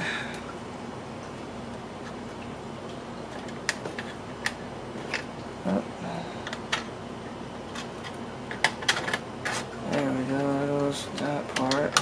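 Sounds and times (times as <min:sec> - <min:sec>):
hard plastic clicking: 0:09.9 - 0:12.0.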